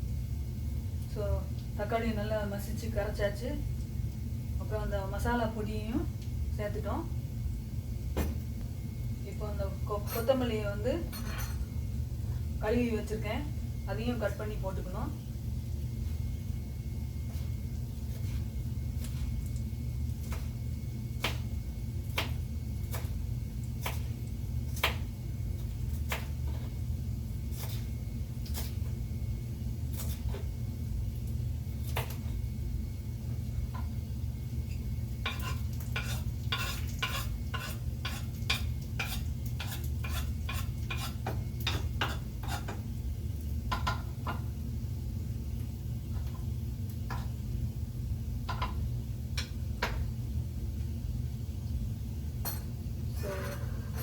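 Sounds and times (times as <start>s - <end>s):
steady low hum: 0.0s - 54.0s
knife chopping on cutting board: 21.2s - 21.5s, 22.1s - 23.2s, 23.8s - 24.1s, 24.7s - 25.1s, 25.9s - 26.7s, 35.3s - 42.8s.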